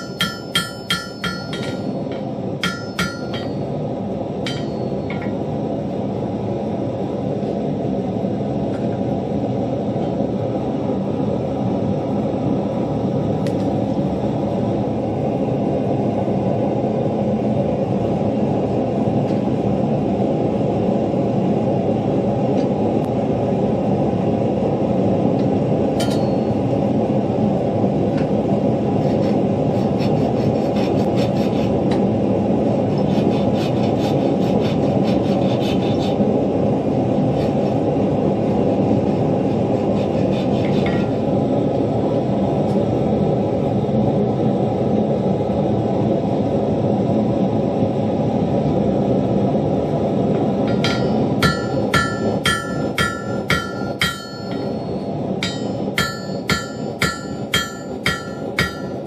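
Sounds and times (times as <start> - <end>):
forge rushing noise: 50.5 - 59.0.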